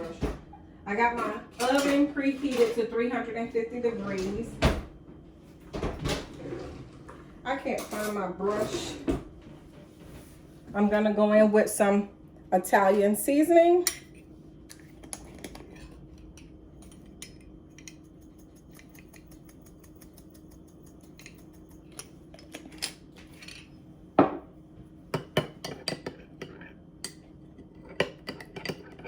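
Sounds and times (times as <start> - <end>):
spoon clinking against a bowl: 13.8 - 14.2, 15.8 - 22.1.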